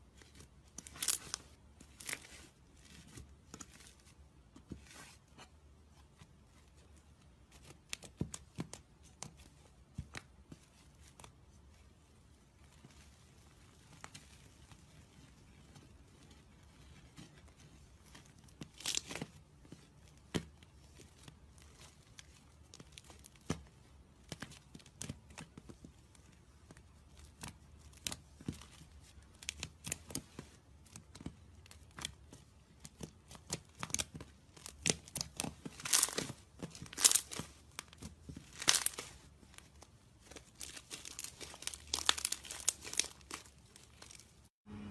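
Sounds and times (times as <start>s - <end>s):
slime squeezed and stretched: 35.8s - 39.3s, 40.5s - 44.2s.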